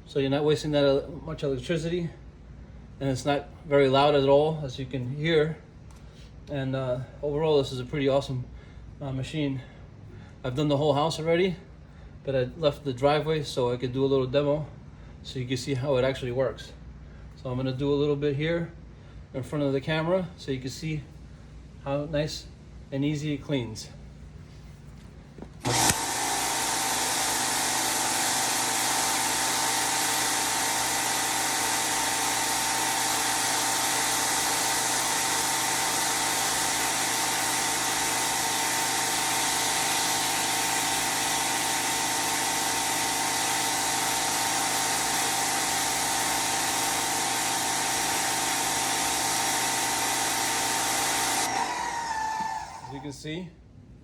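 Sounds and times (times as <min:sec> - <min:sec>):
pressure washer motor running: 0:25.4 - 0:53.0.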